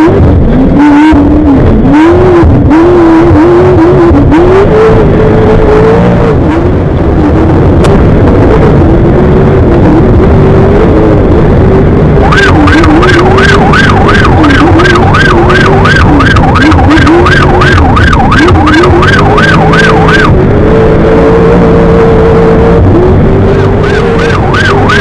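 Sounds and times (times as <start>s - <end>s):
engine running: 0.0s - 25.0s
siren yelping: 12.2s - 20.5s, 23.5s - 25.0s.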